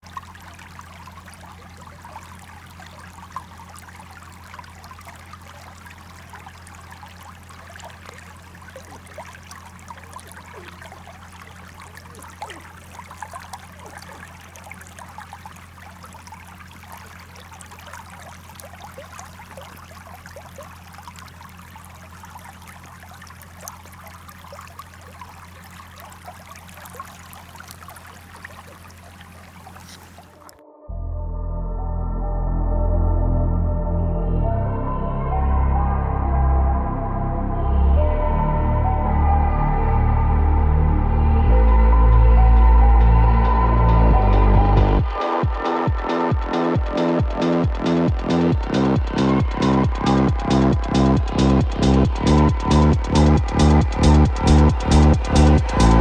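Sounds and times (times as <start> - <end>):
stream babbling and trickling: 0.0 - 30.6, 38.0 - 56.0
steady low hum: 0.1 - 30.5, 48.1 - 56.0.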